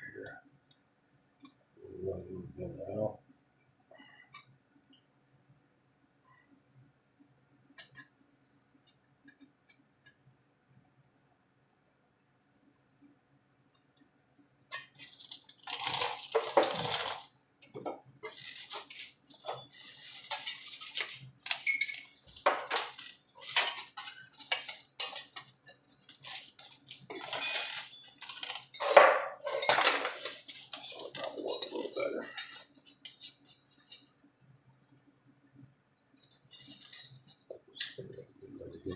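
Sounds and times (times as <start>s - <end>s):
metal clanks and scrapes: 14.7s - 17.3s, 18.2s - 34.1s, 36.2s - 38.3s.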